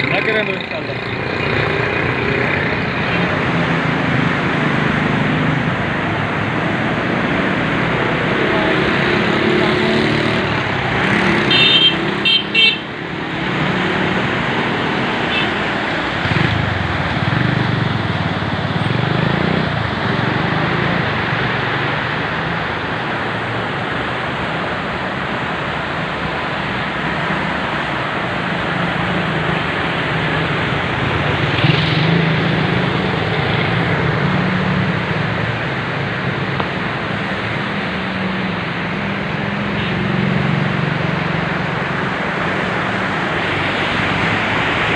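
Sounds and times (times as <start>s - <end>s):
flood water rushing: 0.0s - 39.7s, 40.4s - 44.9s
road traffic passing: 0.0s - 44.9s
vehicle horn toots: 11.5s - 12.8s.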